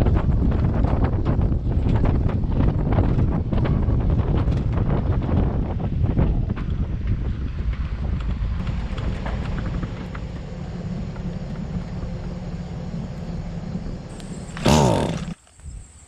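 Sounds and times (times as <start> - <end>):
wind buffeting microphone: 0.0 - 16.0
faint hum: 8.6 - 16.0.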